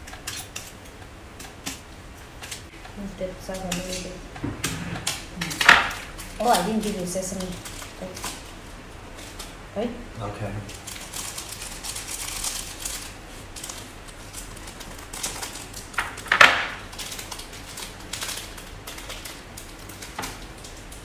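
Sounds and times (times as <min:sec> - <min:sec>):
utensils clattering against dishes: 0:00.0 - 0:09.6.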